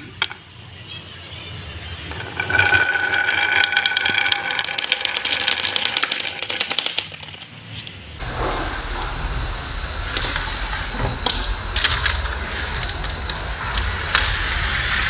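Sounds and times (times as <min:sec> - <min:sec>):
marbles clattering down plastic track: 0:02.0 - 0:08.2.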